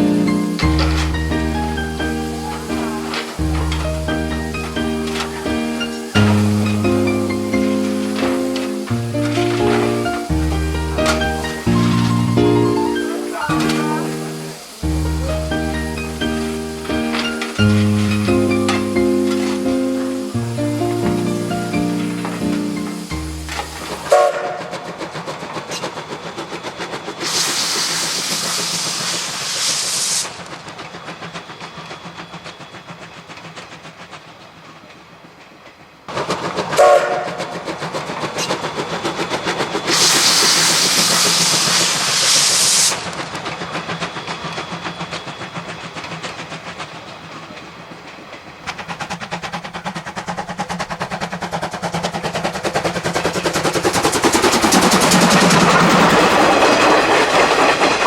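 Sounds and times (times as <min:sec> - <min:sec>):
steam whistle blasts: 0:00.0 - 0:24.8, 0:36.8 - 0:37.4, 0:39.6 - 0:43.0
loud steam hissing: 0:00.0 - 0:58.0
rail clatter: 0:00.0 - 0:58.0
steam locomotive chuffing: 0:00.0 - 0:58.0.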